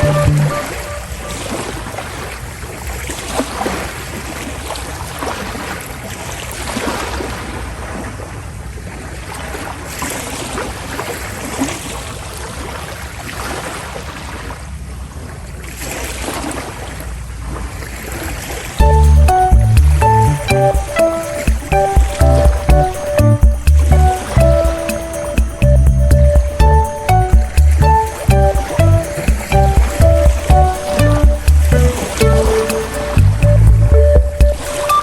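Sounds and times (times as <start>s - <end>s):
ship low rumble: 0.0s - 1.6s, 18.8s - 34.8s
sea water rushing and splashing: 26.9s - 33.4s.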